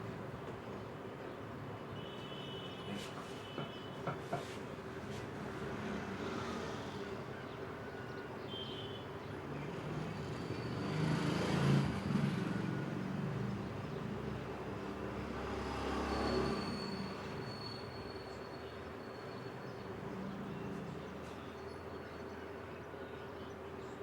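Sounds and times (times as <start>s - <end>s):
rumble of passing traffic: 2.9s - 24.0s.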